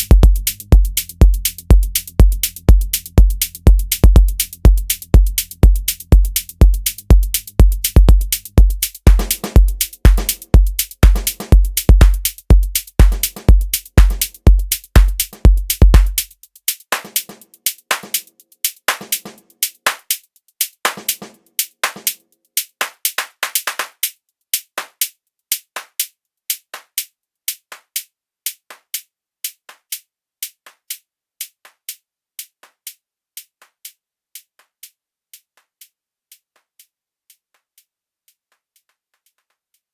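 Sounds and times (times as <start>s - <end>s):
deep kick drum: 0.0s - 16.3s.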